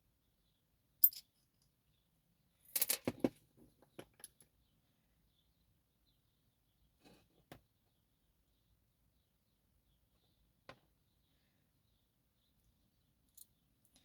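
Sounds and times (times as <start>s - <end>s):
metal lock parts clattering: 2.7s - 3.2s.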